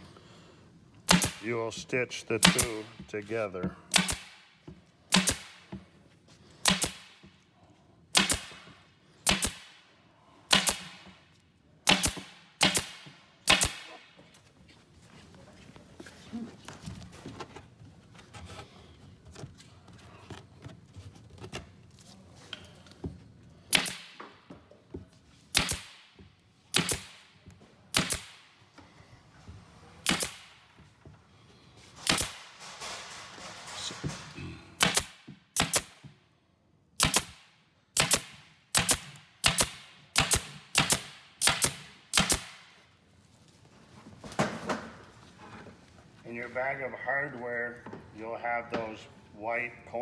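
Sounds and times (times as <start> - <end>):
pneumatic stapler shots: 1.0 - 1.4, 2.4 - 2.9, 3.9 - 4.4, 5.1 - 5.6, 6.6 - 7.2, 8.1 - 8.6, 9.2 - 9.8, 10.5 - 11.0, 11.8 - 14.0, 23.7 - 24.2, 25.5 - 26.1, 26.7 - 27.3, 27.9 - 28.4, 30.0 - 30.6, 32.0 - 32.6, 34.8 - 36.0, 37.0 - 37.4, 38.0 - 42.6.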